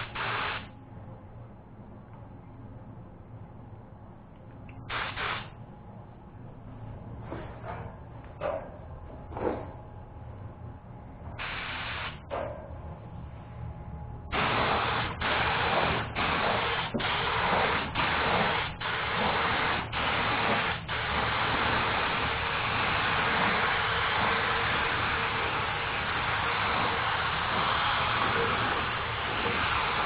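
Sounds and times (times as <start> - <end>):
paint spray gun hissing: 0.0 - 0.7, 4.9 - 5.5, 11.4 - 12.2, 14.3 - 30.0.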